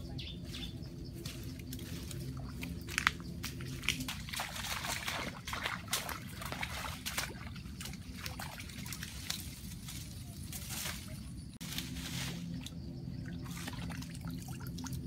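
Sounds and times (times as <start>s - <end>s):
water splashing and trickling: 1.2s - 15.0s
short crackling splashes: 2.6s - 10.1s, 13.2s - 15.0s.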